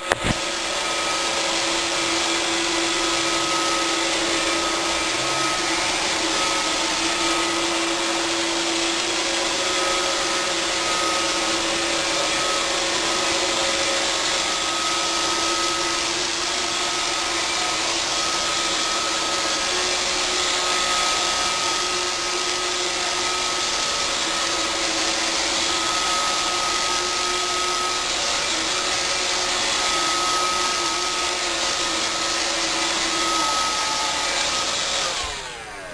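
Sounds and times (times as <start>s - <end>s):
robot vacuum cleaner whirring: 0.0s - 35.9s.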